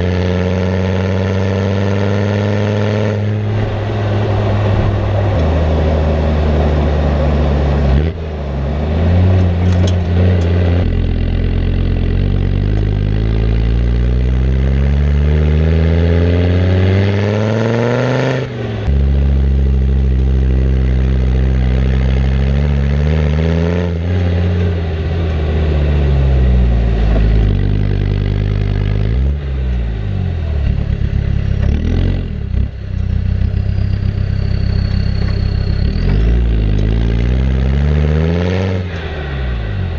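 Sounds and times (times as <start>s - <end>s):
diesel engine revving: 0.0s - 39.9s.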